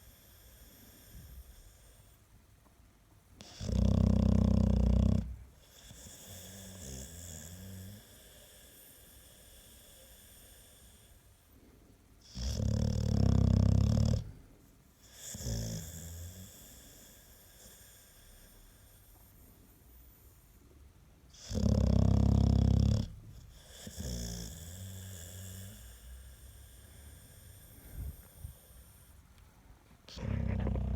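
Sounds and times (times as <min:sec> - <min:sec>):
dog snoring: 0:03.4 - 0:11.2, 0:12.2 - 0:14.4, 0:15.0 - 0:19.4, 0:21.3 - 0:29.2, 0:30.1 - 0:30.9.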